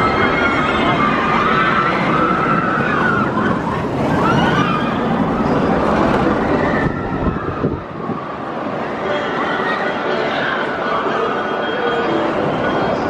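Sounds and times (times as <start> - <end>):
riders screaming: 0.0 - 5.6
roller coaster rumbling on track: 0.0 - 13.0.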